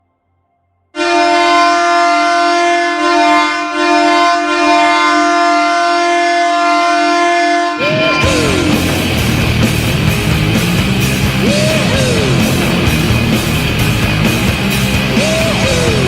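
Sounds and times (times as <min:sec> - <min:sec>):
train horn chord: 0:00.9 - 0:15.7.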